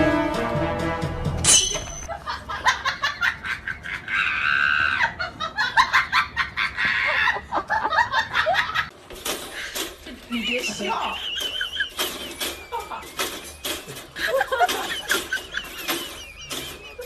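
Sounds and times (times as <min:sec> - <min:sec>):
person laughing hard: 0:02.1 - 0:08.9, 0:10.4 - 0:13.2, 0:14.0 - 0:17.0.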